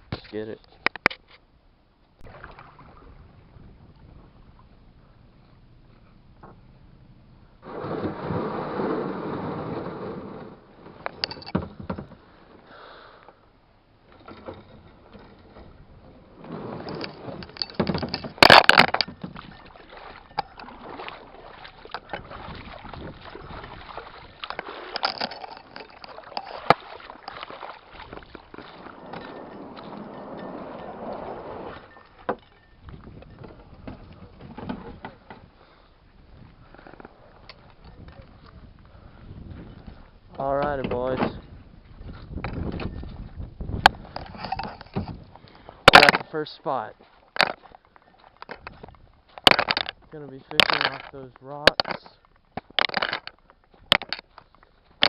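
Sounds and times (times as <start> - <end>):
kayak paddle splashing: 2.2 - 4.9, 7.6 - 37.8, 43.9 - 55.0.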